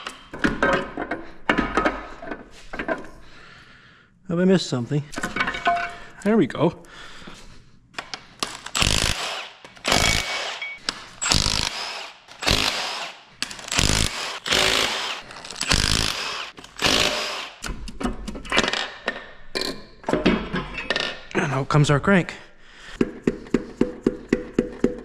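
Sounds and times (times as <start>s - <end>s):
impact gun bursts: 8.7s - 17.6s.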